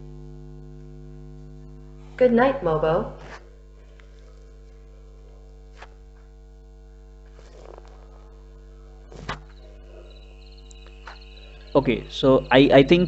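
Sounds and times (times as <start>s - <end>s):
steady hum: 0.0s - 13.0s
sleep sound playing quietly: 7.3s - 13.0s.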